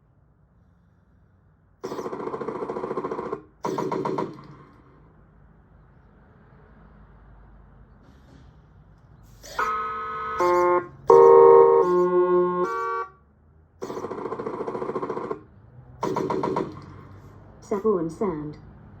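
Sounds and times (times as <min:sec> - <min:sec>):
buzzy horn blasts from speaker: 0:09.4 - 0:13.2
multi-tone horn blasts: 0:09.4 - 0:13.2.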